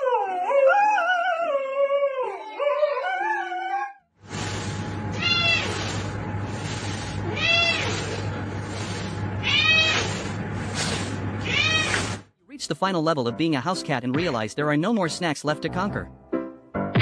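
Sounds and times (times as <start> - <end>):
cat meowing: 5.2 - 5.9, 7.2 - 8.2, 9.4 - 10.2, 11.4 - 12.2.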